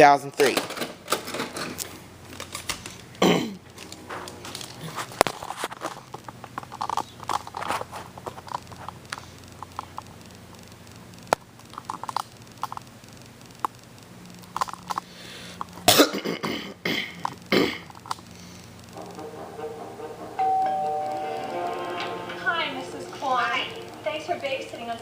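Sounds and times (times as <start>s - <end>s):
plastic rustling: 0.5s - 10.2s.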